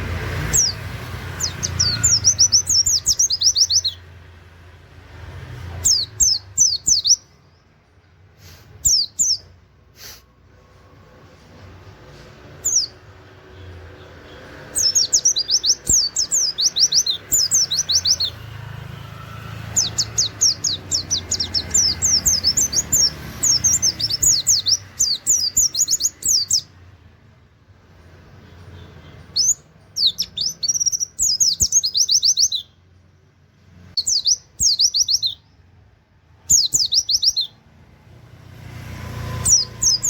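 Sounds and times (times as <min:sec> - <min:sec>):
bird singing rapid high notes: 0:00.4 - 0:04.2, 0:05.8 - 0:07.7, 0:08.7 - 0:09.6, 0:12.5 - 0:26.9, 0:28.4 - 0:32.9, 0:34.0 - 0:35.7, 0:36.4 - 0:37.7, 0:39.2 - 0:40.0.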